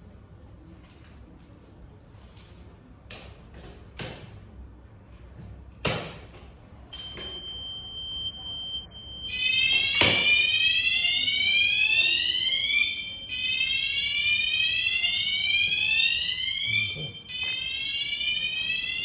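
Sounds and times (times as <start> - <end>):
fire alarm rising sweep tone: 7.0 - 19.0
steady high tone: 11.0 - 19.0.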